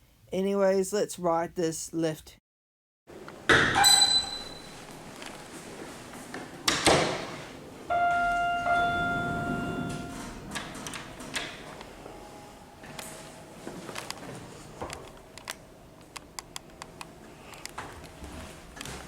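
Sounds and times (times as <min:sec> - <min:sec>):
bright ping: 0:03.6 - 0:04.8
electronic chime tone: 0:03.8 - 0:04.8, 0:07.9 - 0:10.8
lift low hum: 0:07.5 - 0:18.2.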